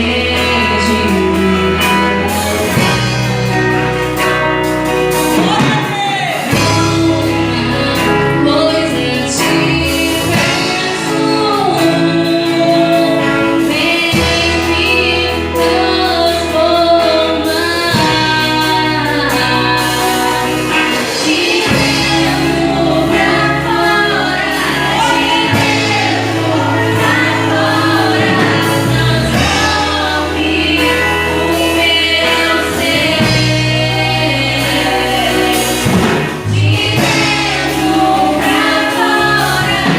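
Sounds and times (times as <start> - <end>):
band playing: 0.0 - 39.9
group singing gospel song: 0.0 - 39.9.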